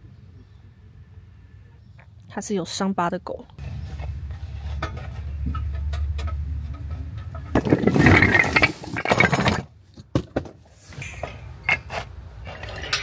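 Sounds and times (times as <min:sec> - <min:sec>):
metal parts clinking and rattling: 0:04.8 - 0:09.7, 0:11.0 - 0:13.0.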